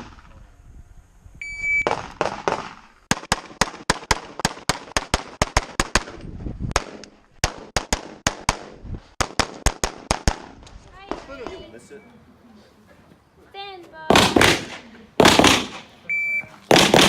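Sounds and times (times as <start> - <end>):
electronic start beep: 1.4 - 1.9
rapid pistol shots: 1.8 - 6.2, 6.8 - 10.6, 14.1 - 16.0, 16.7 - 17.0.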